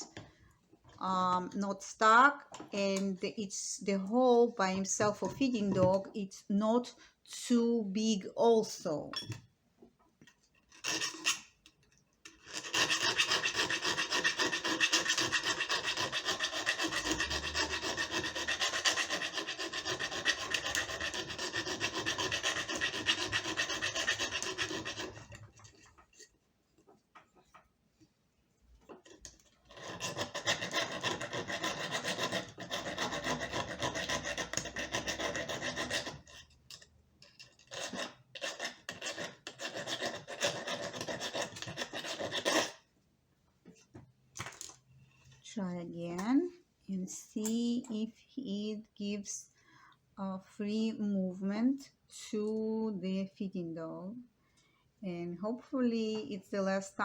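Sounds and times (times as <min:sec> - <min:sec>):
metal filing rasp: 0:10.6 - 0:11.5, 0:12.3 - 0:26.2, 0:29.0 - 0:42.8.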